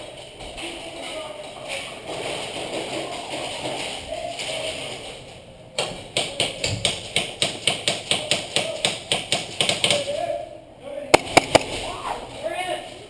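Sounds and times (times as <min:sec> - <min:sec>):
airsoft gun firing single shots: 0:11.2 - 0:11.8.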